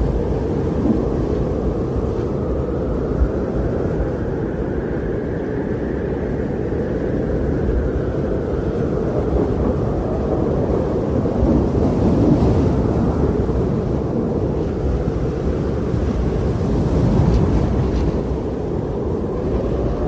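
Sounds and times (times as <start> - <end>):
low wind rushing: 0.0 - 20.0.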